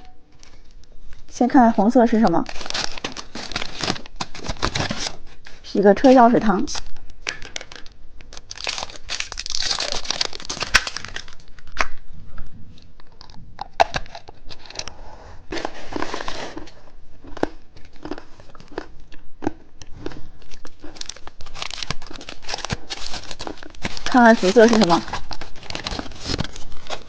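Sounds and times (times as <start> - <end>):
plastic wrapper crinkling: 2.0 - 12.0, 20.0 - 27.0.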